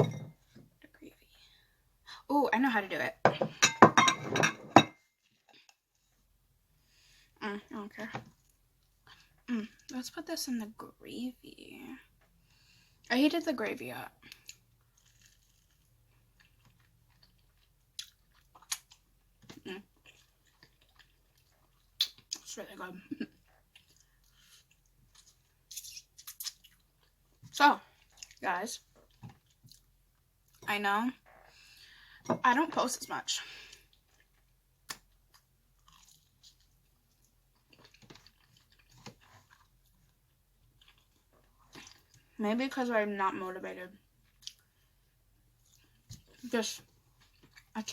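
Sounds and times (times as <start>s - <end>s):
chewing fried chicken: 14.2s - 22.5s, 23.2s - 30.6s, 33.5s - 42.4s, 44.0s - 47.8s.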